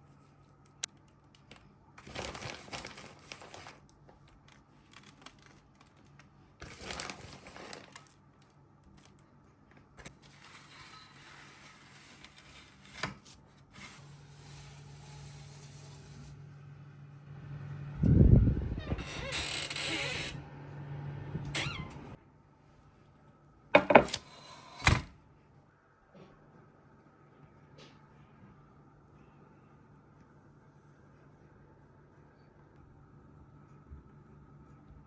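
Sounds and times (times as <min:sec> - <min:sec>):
crinkling and scraping in kitchen: 0:00.0 - 0:16.4, 0:23.7 - 0:25.2.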